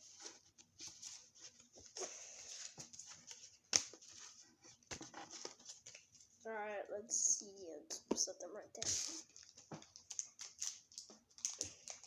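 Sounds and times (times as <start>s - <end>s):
cards rustling and scraping: 0.0s - 6.4s.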